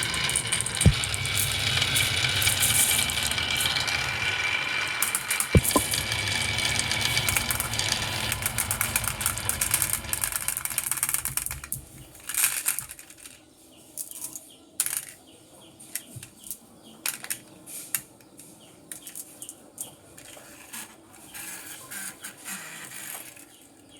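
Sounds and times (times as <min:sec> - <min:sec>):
marbles rattling down a marble run: 0:00.0 - 0:13.3.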